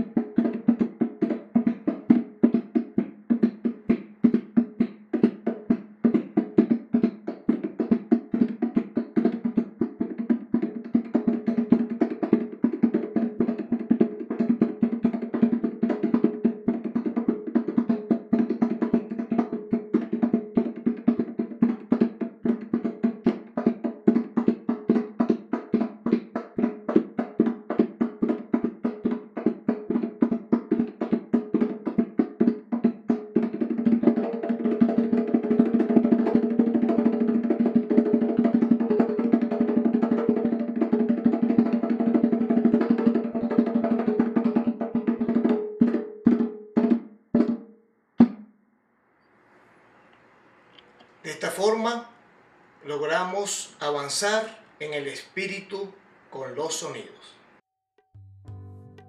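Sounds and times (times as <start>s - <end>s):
bongos played by hand: 0.0s - 48.6s, 57.9s - 59.0s.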